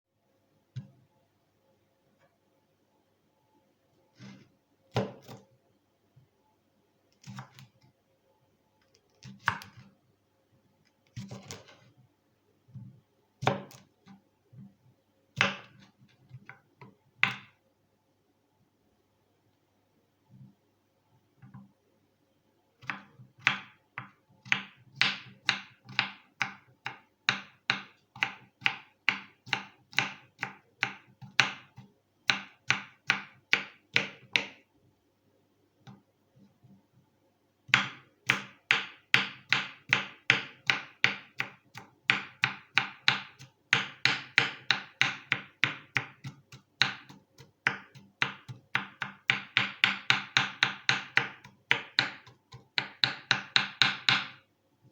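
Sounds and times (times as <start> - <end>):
knife chopping on wooden board: 4.2 - 5.4, 9.2 - 9.8, 11.2 - 11.8, 13.4 - 13.8, 15.4 - 16.6, 17.2 - 17.5, 22.8 - 34.6, 37.7 - 54.4.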